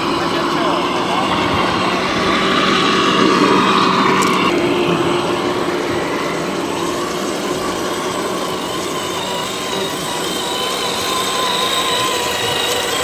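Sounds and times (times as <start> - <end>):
electric motor whining: 0.0 - 13.0.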